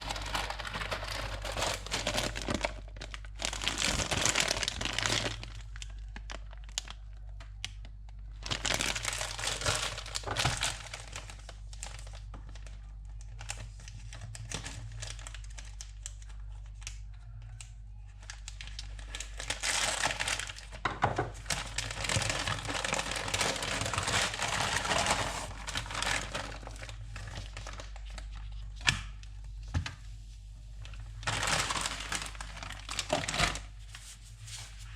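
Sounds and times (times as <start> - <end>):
plastic packaging crinkling: 0.0 - 34.9.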